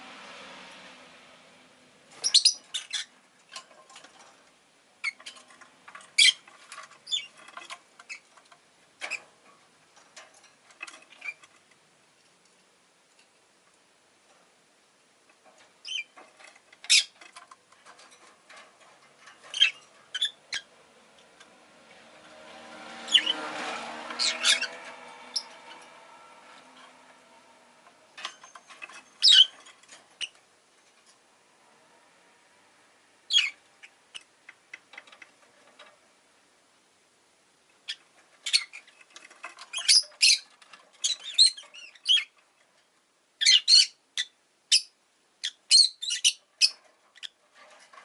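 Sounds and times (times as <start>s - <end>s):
bird chirping and squeaking: 2.1s - 3.2s, 5.0s - 9.4s, 10.7s - 11.6s, 15.8s - 20.8s, 23.0s - 27.0s, 28.2s - 30.4s, 33.3s - 35.3s, 37.8s - 42.4s, 43.4s - 48.0s.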